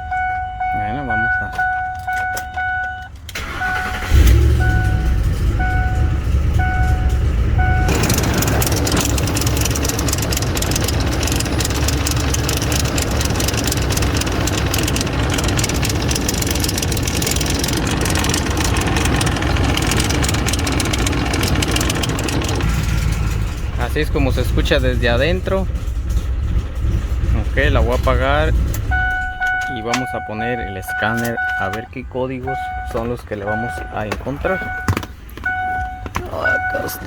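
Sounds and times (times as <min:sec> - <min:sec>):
warning chime beeping: 0:00.0 - 0:10.7, 0:28.9 - 0:37.0
truck engine cranking and running: 0:00.0 - 0:37.0.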